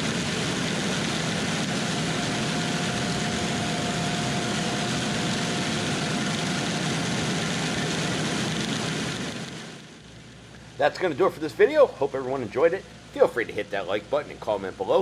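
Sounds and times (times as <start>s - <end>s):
thin high whine: 0.0s - 9.9s
harvest machinery engine running: 0.0s - 15.0s.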